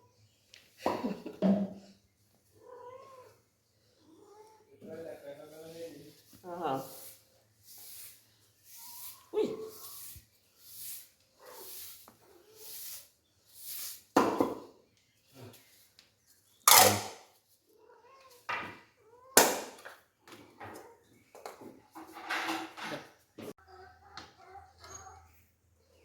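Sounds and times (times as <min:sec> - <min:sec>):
cat meowing: 0:02.6 - 0:03.4.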